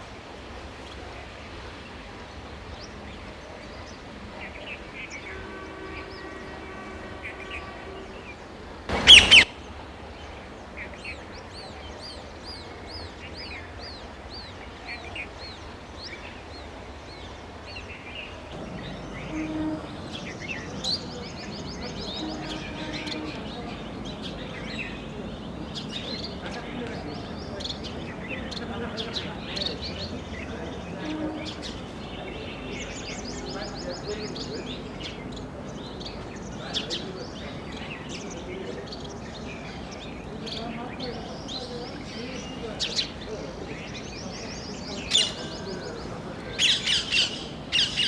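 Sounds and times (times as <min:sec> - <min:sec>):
birds chirping: 0:00.0 - 0:48.0
whistled bird notes: 0:02.7 - 0:09.8, 0:10.9 - 0:40.2
parakeet harsh screech: 0:08.9 - 0:09.5.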